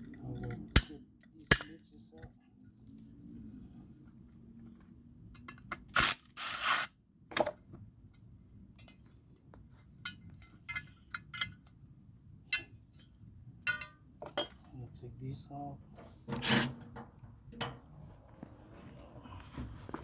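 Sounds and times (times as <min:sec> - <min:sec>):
metal scrape: 0:16.0 - 0:17.0.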